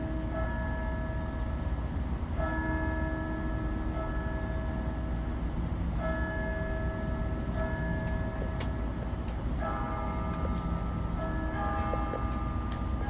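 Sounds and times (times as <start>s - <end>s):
church bells ringing: 0.0s - 13.0s
steady low rumble: 6.8s - 13.0s.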